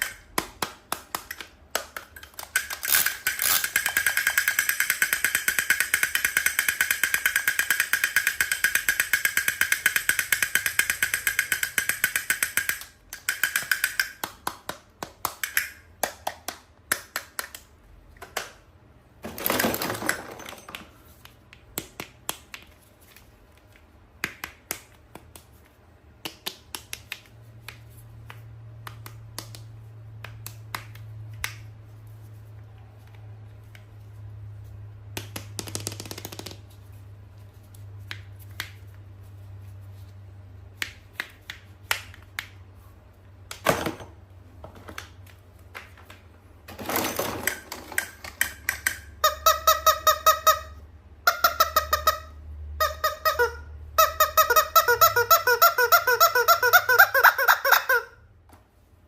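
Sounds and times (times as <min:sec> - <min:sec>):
scattered clicks and taps: 0:00.0 - 0:18.6.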